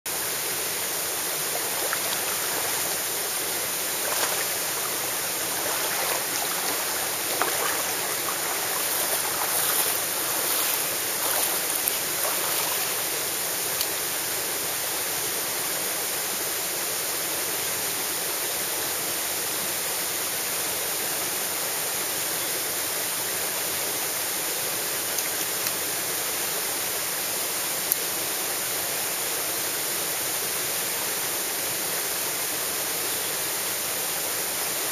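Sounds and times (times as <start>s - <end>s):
stream rushing over rocks: 0.1s - 34.9s.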